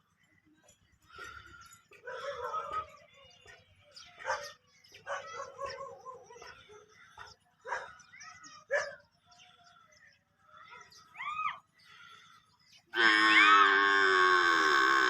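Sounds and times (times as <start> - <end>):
young livestock calling: 13.0 - 15.0.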